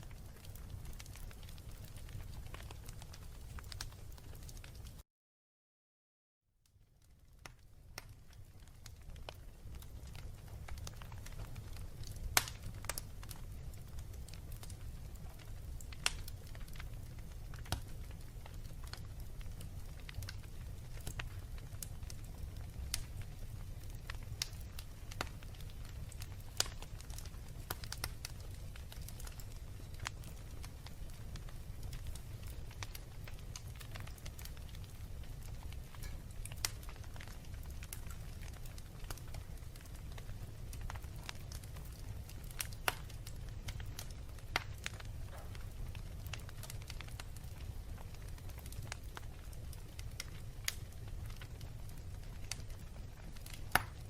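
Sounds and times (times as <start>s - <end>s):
fire rumbling in a fireplace: 0.0s - 5.0s, 6.6s - 54.0s
logs crackling and popping: 0.0s - 5.0s, 7.0s - 54.0s.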